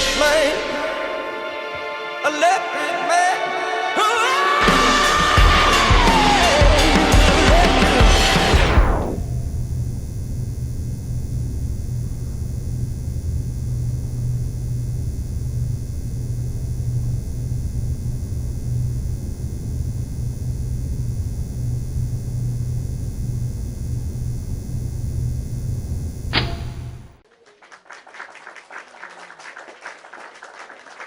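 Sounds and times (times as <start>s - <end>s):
low rumbling hum: 8.0s - 27.2s.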